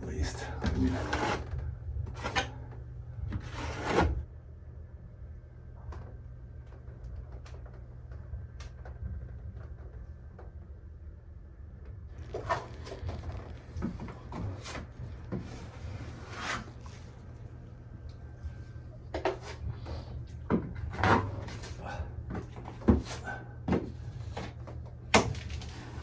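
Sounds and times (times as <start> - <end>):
low steady hum: 0.0 - 26.0
hand tools scraping drywall: 0.6 - 1.5, 3.4 - 4.2, 12.2 - 17.1.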